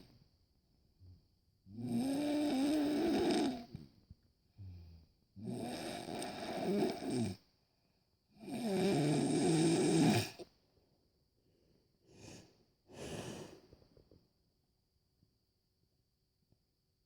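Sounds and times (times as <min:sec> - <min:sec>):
man snoring: 0:01.7 - 0:03.7, 0:05.4 - 0:07.4, 0:08.4 - 0:10.4
soft breaths: 0:11.5 - 0:14.2.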